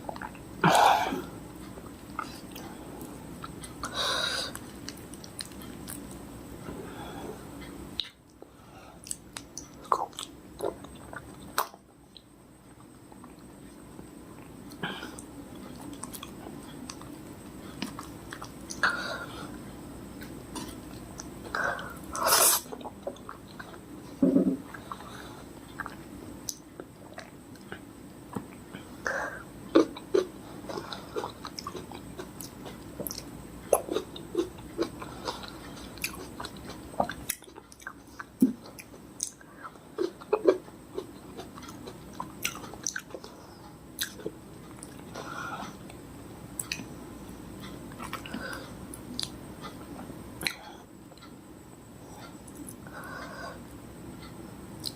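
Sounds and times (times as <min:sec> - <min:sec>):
chewing and biting fruit: 0:29.8 - 0:43.3, 0:44.0 - 0:45.1.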